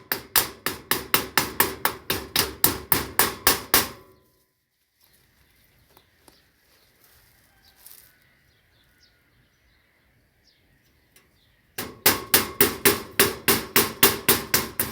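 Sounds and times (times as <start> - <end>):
hammer striking: 0.0 - 4.1, 11.8 - 14.9
faint bird chirps: 4.2 - 11.8.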